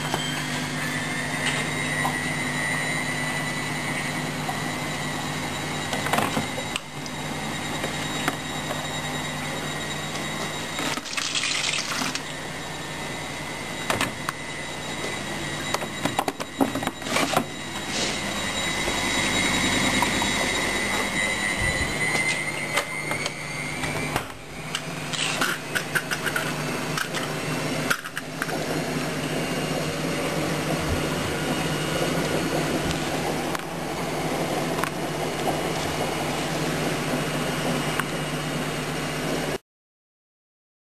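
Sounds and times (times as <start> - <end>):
high whine: 0.0 - 39.6
washing machine low hum: 0.0 - 39.6
washing machine water sloshing: 10.8 - 12.3.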